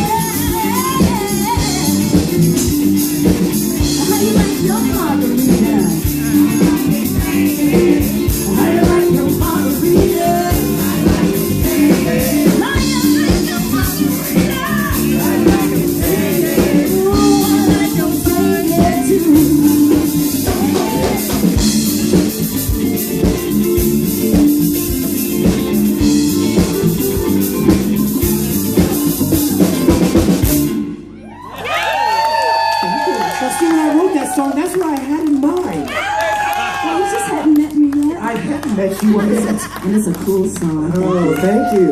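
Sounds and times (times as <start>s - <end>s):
rock band playing: 0.0s - 41.9s.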